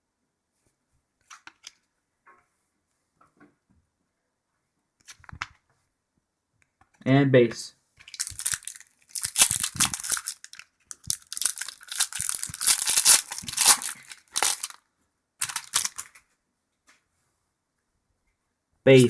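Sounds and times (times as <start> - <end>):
card pack tearing open: 8.1 - 14.8, 15.4 - 16.1
wrapper crinkling: 8.1 - 14.8, 15.4 - 16.2.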